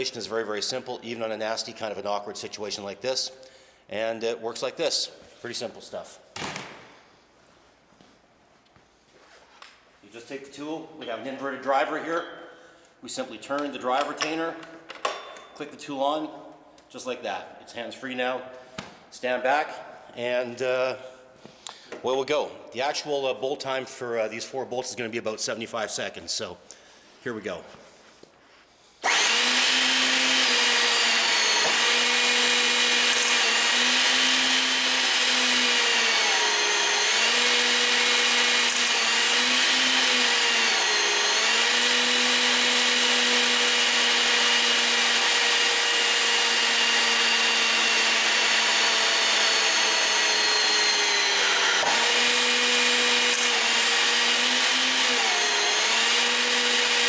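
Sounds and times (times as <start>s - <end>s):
hydraulic pump humming: 29.0s - 57.0s.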